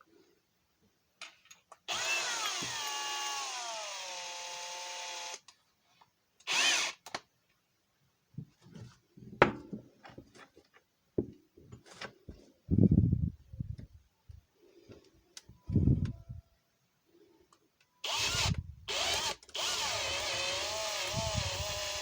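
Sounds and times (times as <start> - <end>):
power drill whining into metal: 1.9 - 5.5, 6.5 - 7.2, 18.0 - 22.0.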